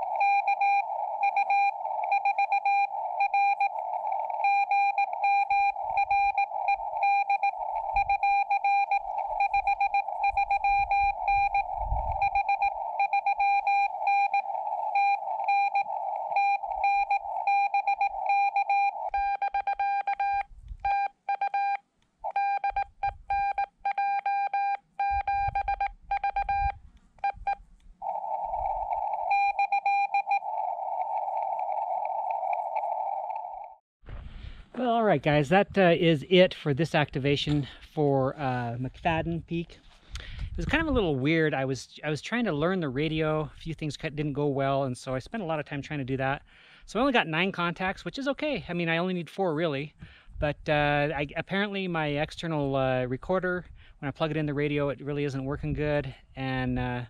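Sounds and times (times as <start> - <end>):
radio hiss: 0.0 - 19.2, 28.0 - 33.8
morse code tone: 0.0 - 27.6, 28.4 - 31.7.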